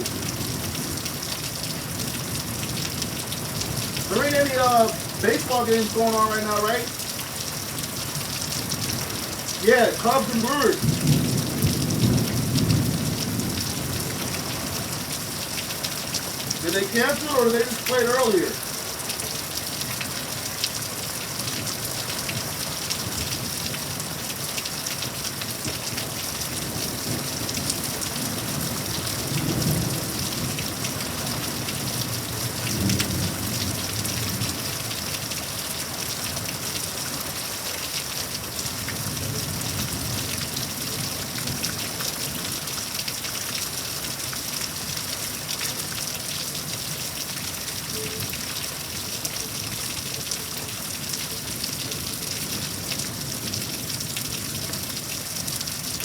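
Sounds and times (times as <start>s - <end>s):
heavy rain falling: 0.0s - 56.0s
thunder rumbling: 9.6s - 14.9s.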